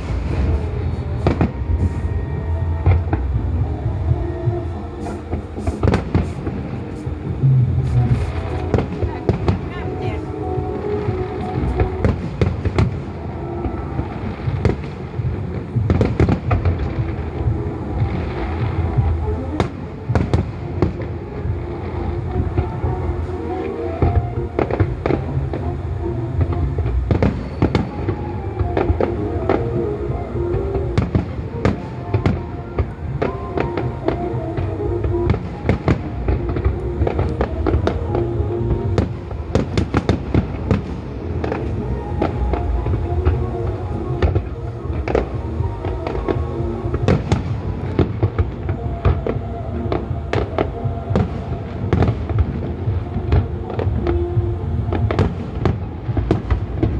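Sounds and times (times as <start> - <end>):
firework cracks: 0.0 - 3.3
low rumble of booms: 0.0 - 23.2
fireworks banging and crackling: 0.0 - 56.9
music with long held notes: 0.0 - 56.9.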